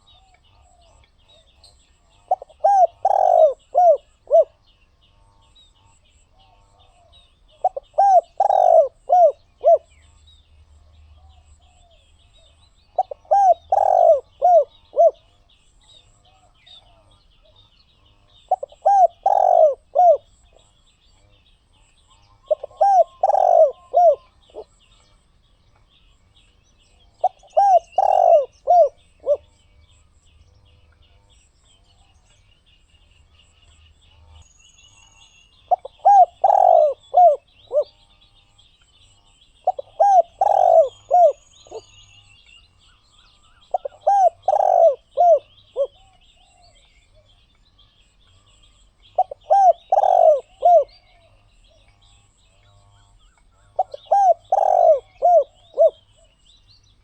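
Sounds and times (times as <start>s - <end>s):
small birds chirping faintly: 0.0s - 57.0s
dove cooing: 2.2s - 4.6s, 6.9s - 10.0s, 11.2s - 15.3s, 18.5s - 20.6s, 22.4s - 24.7s, 27.1s - 29.5s, 35.7s - 38.0s, 39.6s - 42.0s, 43.7s - 47.3s, 49.2s - 51.9s, 53.7s - 56.4s.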